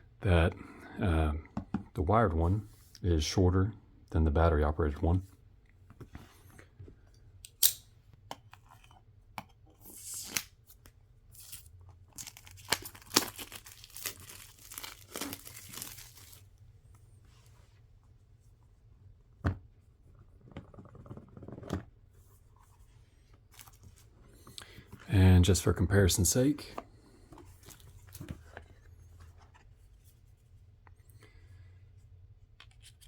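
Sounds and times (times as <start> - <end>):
packaging tearing and crumpling: 11.4 - 16.4.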